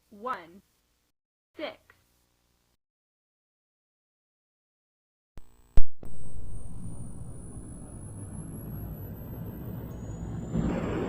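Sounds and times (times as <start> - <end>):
low steady rumble: 5.4 - 11.0
thin whine rising in pitch: 5.4 - 11.0.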